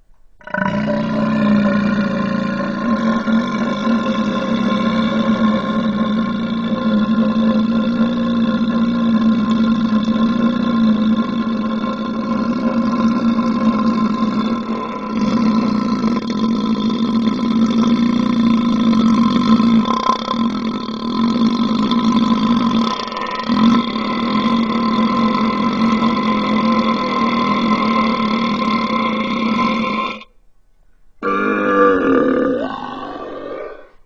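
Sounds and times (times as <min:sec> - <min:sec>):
slow-motion human belch: 0:00.4 - 0:30.3, 0:31.2 - 0:34.0.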